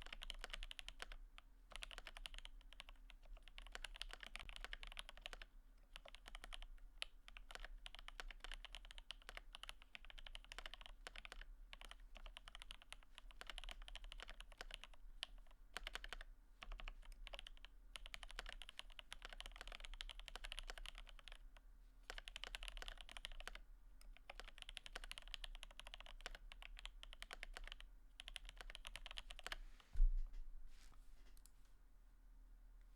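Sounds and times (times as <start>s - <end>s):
mechanical keyboard typing: 0.0s - 21.4s, 22.1s - 29.6s
heavy thump: 30.0s - 30.4s.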